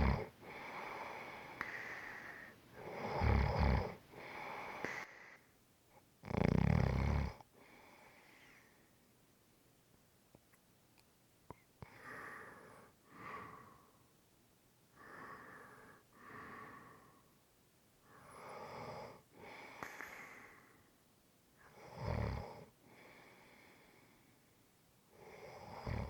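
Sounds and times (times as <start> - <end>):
person breathing heavily in sleep: 0.0 - 5.5, 7.6 - 8.8, 11.8 - 14.0, 15.0 - 17.3, 18.1 - 20.8, 22.2 - 24.4.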